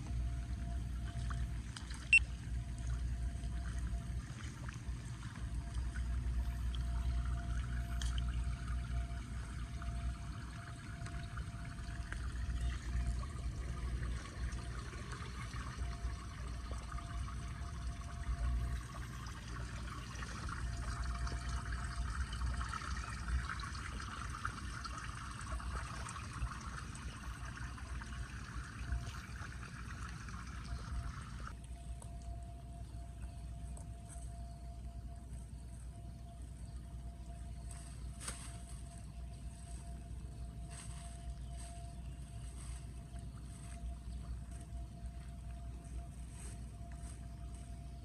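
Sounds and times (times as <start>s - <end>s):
water pouring into storm drain: 1.2s - 31.6s.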